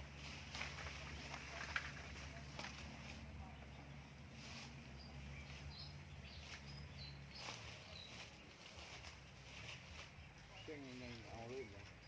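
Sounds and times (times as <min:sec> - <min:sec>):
low steady hum: 0:00.0 - 0:12.0
high bird chirps: 0:04.9 - 0:11.7.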